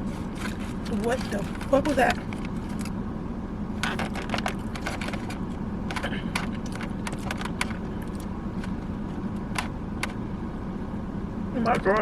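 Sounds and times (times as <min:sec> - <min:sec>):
car interior hum: 0:00.0 - 0:12.0.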